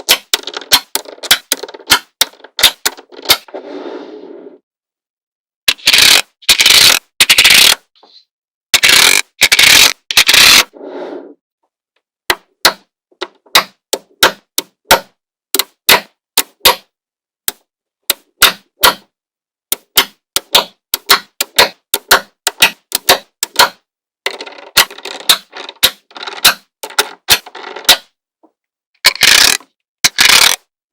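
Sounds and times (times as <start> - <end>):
magnetic balls clicking together: 0.0 - 3.0, 5.7 - 7.8, 8.8 - 10.6, 19.8 - 23.7, 29.0 - 30.7.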